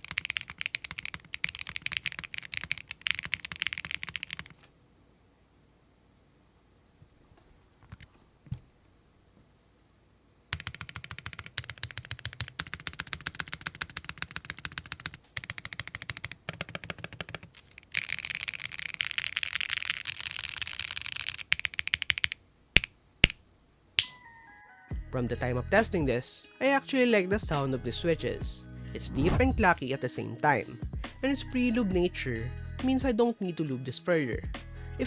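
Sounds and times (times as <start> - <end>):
mechanical keyboard typing: 0.0 - 4.6, 10.5 - 22.4.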